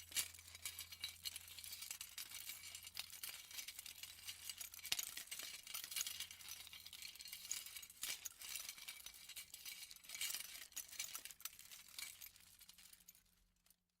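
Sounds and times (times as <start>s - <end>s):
metal jewelry jingling: 0.0s - 9.0s.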